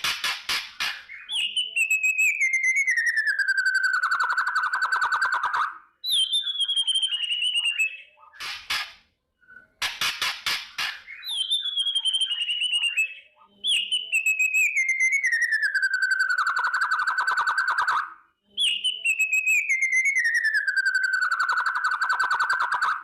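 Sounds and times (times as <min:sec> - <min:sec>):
bird singing buzzy trills: 0:00.0 - 0:08.8, 0:10.7 - 0:23.0
bird harsh rattling: 0:08.4 - 0:09.0, 0:09.8 - 0:11.2.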